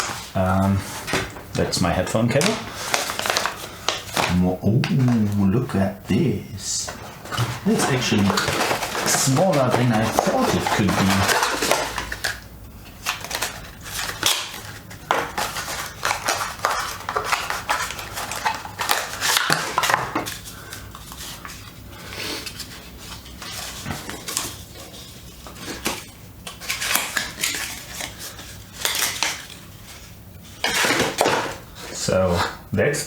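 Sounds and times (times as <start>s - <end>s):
packaging rustling: 0.0s - 32.2s.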